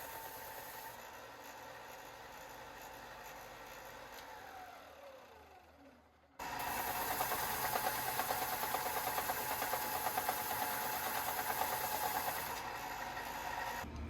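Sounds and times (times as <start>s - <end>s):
power sander grinding metal: 6.4s - 13.9s.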